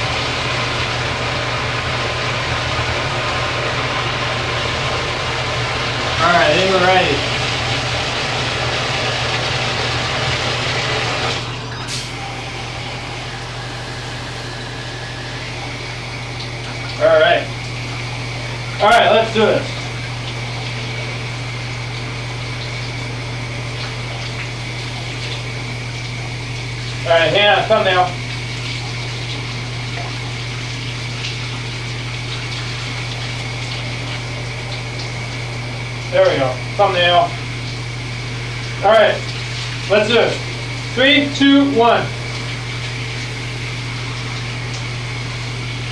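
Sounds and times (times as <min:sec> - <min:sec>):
shower water spraying: 0:00.0 - 0:45.9
steady low hum: 0:11.8 - 0:45.9.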